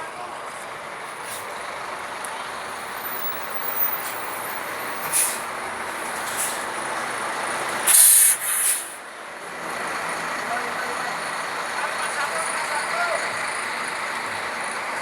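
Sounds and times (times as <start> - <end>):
bus engine and road noise: 0.0 - 15.0
bus air brakes hissing: 2.9 - 5.6, 6.2 - 6.8, 7.8 - 9.0.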